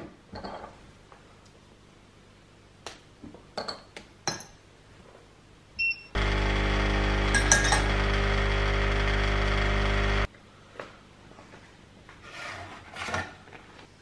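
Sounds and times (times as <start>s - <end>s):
appliance beep: 5.8s - 10.3s
appliance electric hum: 6.1s - 10.4s
dishes clinking: 7.4s - 7.9s.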